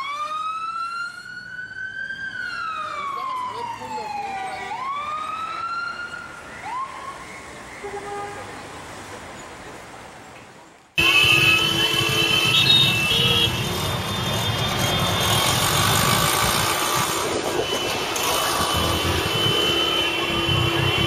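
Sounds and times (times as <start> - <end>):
ambulance siren: 0.0 - 8.0, 17.4 - 21.0
vehicle engines running: 11.0 - 21.0.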